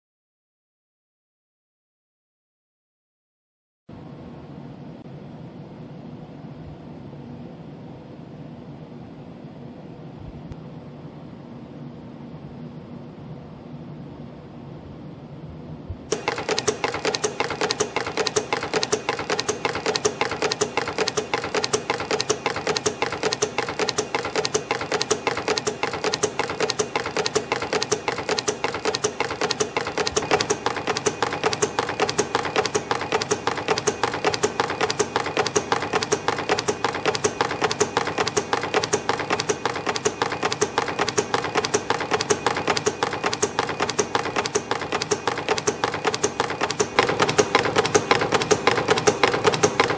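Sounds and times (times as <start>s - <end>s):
steady machine hum: 3.9s - 49.9s
spring machine clattering: 16.1s - 49.9s.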